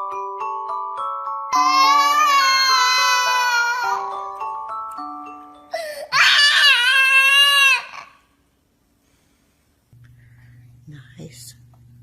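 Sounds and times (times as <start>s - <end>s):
glockenspiel-like chiming melody: 0.0s - 6.1s
baby crying: 1.6s - 4.1s, 5.8s - 8.3s.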